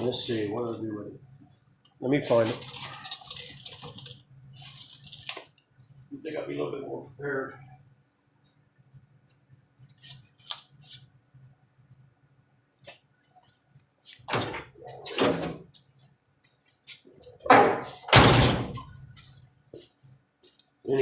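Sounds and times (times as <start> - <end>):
objects clunking and clattering: 17.3 - 19.0.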